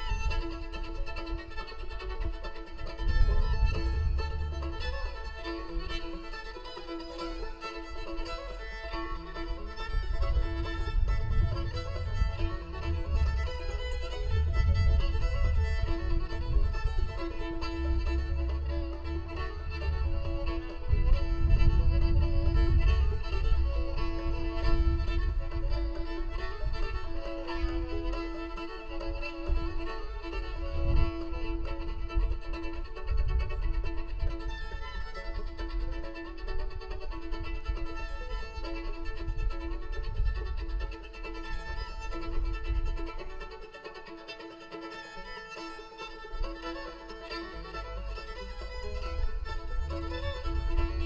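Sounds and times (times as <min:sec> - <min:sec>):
fiddle playing melody: 0:00.0 - 0:51.0
low rumble: 0:02.8 - 0:06.8, 0:07.9 - 0:28.0, 0:47.4 - 0:51.0.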